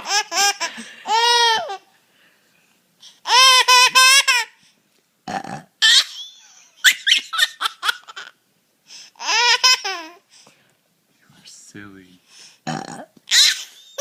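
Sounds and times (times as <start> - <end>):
baby laughing: 0.0 - 1.9, 3.2 - 4.6, 5.8 - 8.4, 9.2 - 10.2, 13.3 - 14.0
baby squealing and giggling: 0.0 - 1.9, 3.2 - 4.6, 5.8 - 8.4, 9.2 - 10.2, 13.3 - 14.0
baby burping: 5.2 - 6.0, 12.6 - 13.2.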